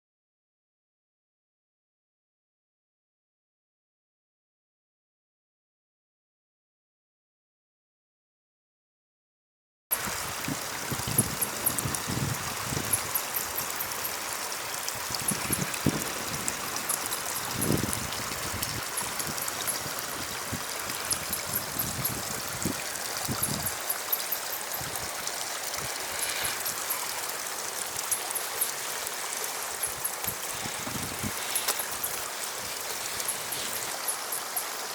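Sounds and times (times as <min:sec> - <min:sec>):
water trickling and gurgling: 0:09.9 - 0:34.9.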